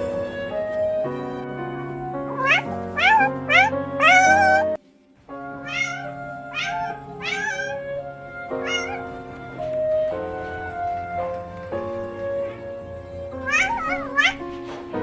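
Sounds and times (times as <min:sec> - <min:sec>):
background music of held notes: 0:00.0 - 0:15.0
cat meowing: 0:02.3 - 0:04.8, 0:05.4 - 0:12.6, 0:13.4 - 0:14.8.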